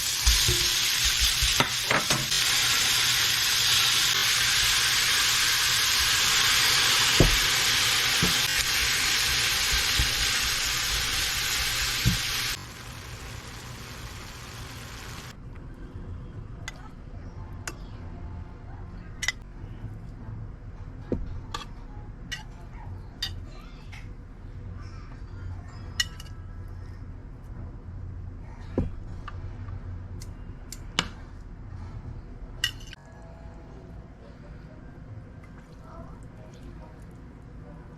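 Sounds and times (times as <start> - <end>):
food sizzling in a frying pan: 0.0 - 15.3.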